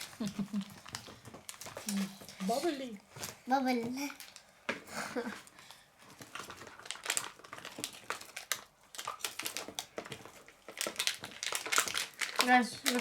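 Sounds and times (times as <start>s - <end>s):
plastic packaging crinkling: 0.0s - 3.4s, 4.0s - 4.5s, 5.2s - 13.0s.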